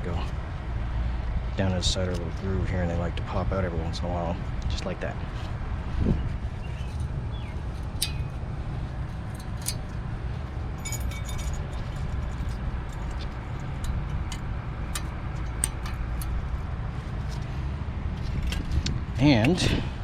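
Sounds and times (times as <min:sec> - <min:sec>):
steady low rumble: 0:00.0 - 0:20.0
metal brake parts clinking: 0:06.6 - 0:10.1, 0:10.7 - 0:17.6
short metal rattle: 0:06.7 - 0:10.0, 0:10.7 - 0:17.4.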